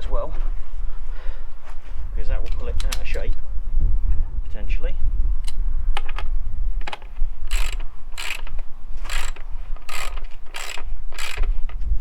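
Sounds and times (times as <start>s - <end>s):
ratchet wrench clicking: 6.9s - 11.6s.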